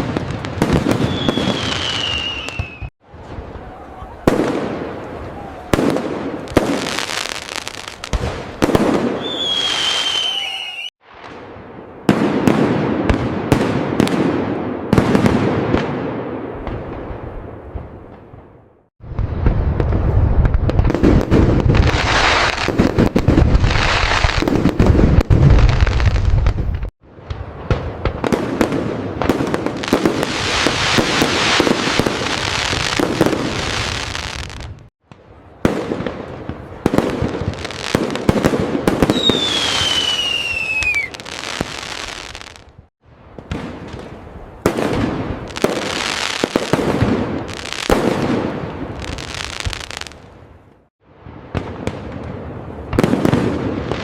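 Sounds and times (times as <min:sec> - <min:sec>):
fireworks booming and crackling: 0:00.0 - 0:54.0
firework whistling: 0:00.6 - 0:02.9, 0:06.5 - 0:10.9, 0:37.5 - 0:42.6.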